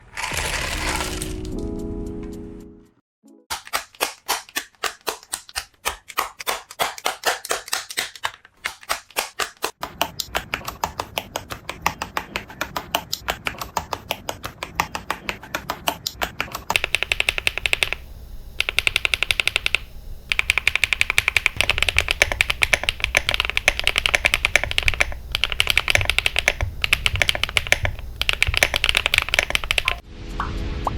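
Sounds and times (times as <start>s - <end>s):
mechanical keyboard typing: 9.1s - 30.0s.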